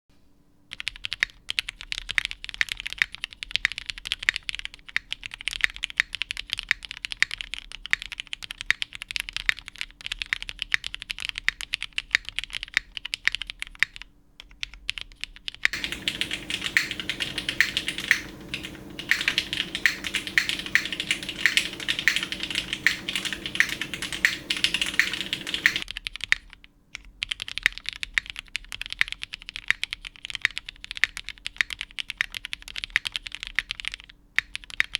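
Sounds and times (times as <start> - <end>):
mechanical keyboard typing: 0.7 - 13.7, 14.6 - 26.5, 27.2 - 34.9.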